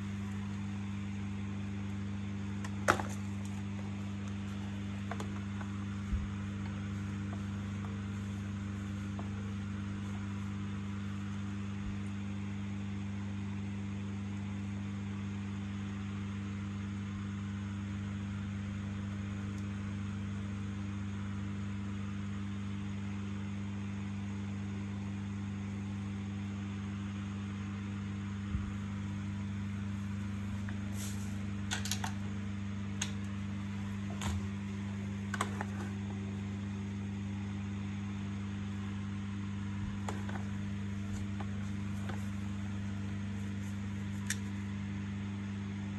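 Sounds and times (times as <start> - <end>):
steady low hum: 0.0 - 12.8, 24.9 - 45.9.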